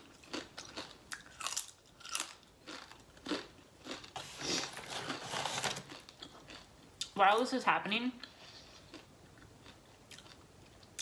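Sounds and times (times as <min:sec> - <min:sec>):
person chewing food: 0:00.0 - 0:05.2, 0:05.8 - 0:07.1, 0:08.2 - 0:11.0.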